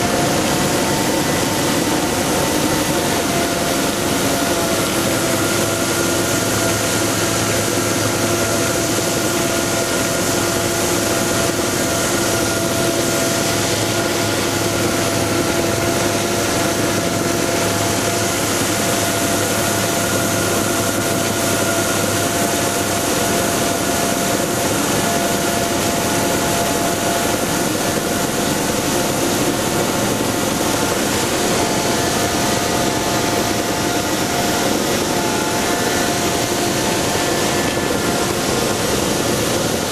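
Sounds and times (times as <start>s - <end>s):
ice edger cutting ice: 0.0s - 39.9s.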